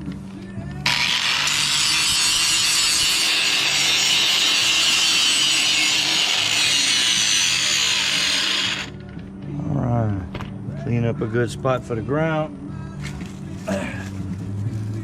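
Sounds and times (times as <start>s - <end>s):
power tool grinding metal: 0.8s - 9.0s.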